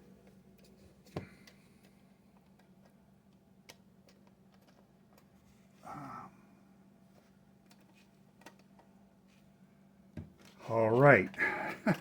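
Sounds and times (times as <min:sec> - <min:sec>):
faint clicks and taps: 0:00.2 - 0:05.6, 0:07.1 - 0:09.5.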